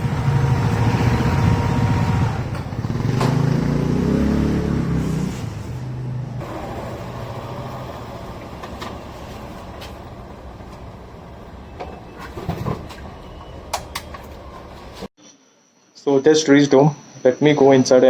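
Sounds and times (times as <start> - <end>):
motorcycle engine winding down: 0.0 - 9.0.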